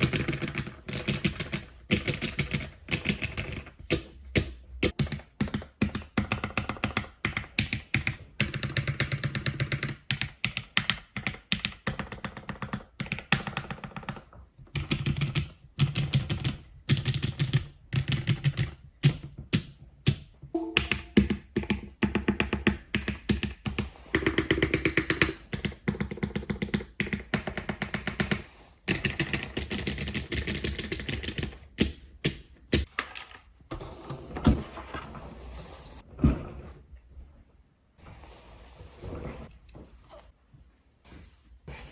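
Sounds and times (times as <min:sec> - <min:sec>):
fast mechanical keyboard typing: 0:00.0 - 0:04.0, 0:04.9 - 0:18.8, 0:24.2 - 0:31.6.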